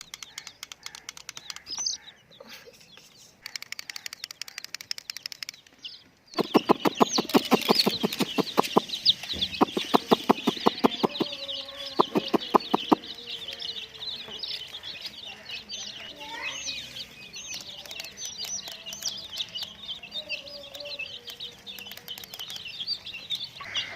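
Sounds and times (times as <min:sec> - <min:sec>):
regular clicking: 0:00.0 - 0:02.1, 0:03.0 - 0:11.3, 0:12.0 - 0:13.7, 0:17.4 - 0:19.8, 0:20.6 - 0:23.2
chicks peeping: 0:00.0 - 0:23.9
fine fast ticking: 0:03.5 - 0:05.7, 0:06.4 - 0:11.3, 0:12.0 - 0:13.0.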